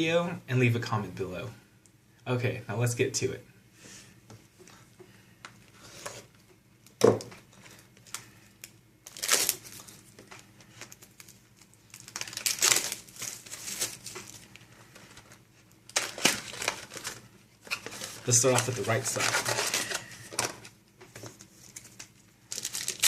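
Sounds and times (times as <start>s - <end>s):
plastic wrapping crinkling and tearing: 7.6s - 23.0s.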